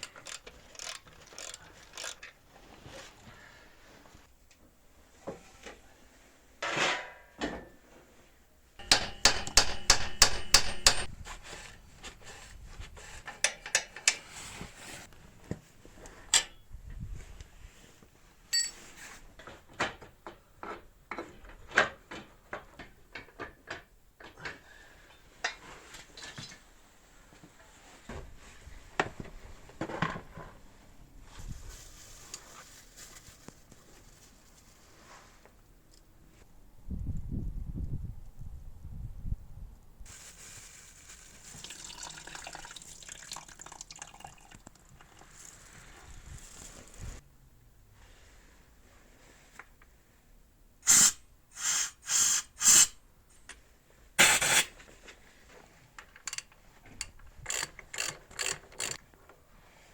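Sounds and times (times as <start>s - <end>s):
hand tools clinking on metal: 8.8s - 11.1s, 18.5s - 18.8s.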